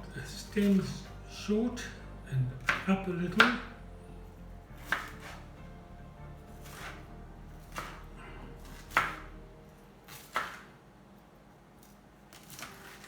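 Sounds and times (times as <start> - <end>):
knife chopping on cutting board: 0.6 - 1.0, 2.6 - 3.8, 4.8 - 5.5, 6.6 - 9.3, 10.1 - 10.7, 12.3 - 13.0.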